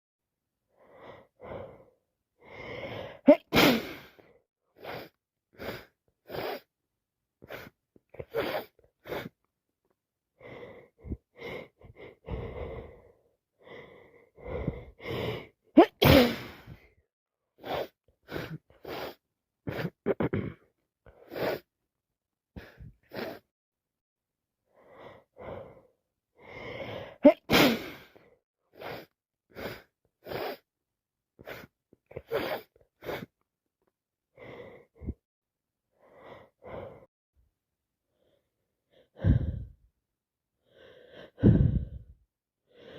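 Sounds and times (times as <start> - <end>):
woman sneezing: 3.3 - 4.1, 15.8 - 16.7, 27.2 - 28.0
gasping breaths: 38.2 - 39.8, 40.6 - 42.9.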